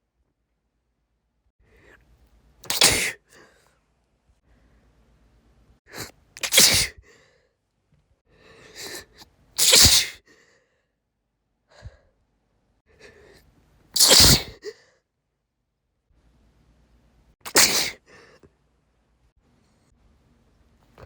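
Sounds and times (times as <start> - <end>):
woman sneezing: 2.6 - 3.5, 5.9 - 7.0, 9.6 - 10.2, 14.0 - 14.8, 17.4 - 18.4.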